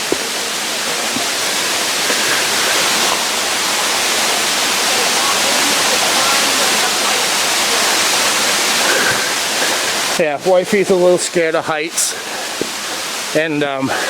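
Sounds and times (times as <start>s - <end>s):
waterfall cascading over rock: 0.0s - 14.0s.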